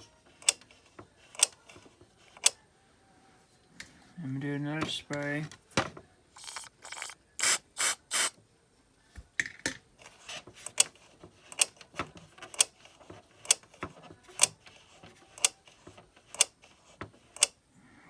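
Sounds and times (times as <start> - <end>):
spray can hissing: 6.4 - 8.4.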